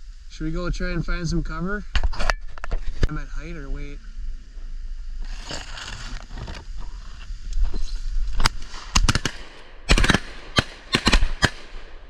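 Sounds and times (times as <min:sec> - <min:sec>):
sharp cracks: 0:08.3 - 0:12.0.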